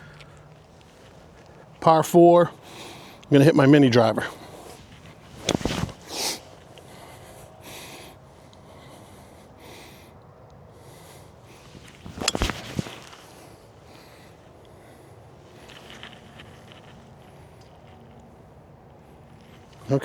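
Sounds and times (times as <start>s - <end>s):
wind noise on microphone: 11.6s - 13.3s
golf club striking ball: 11.9s - 13.4s.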